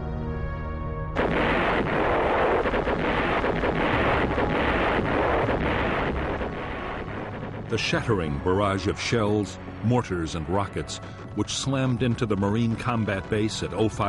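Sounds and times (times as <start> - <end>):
sustained music tones: 0.1 - 14.0
artillery barrage explosions: 1.2 - 9.3.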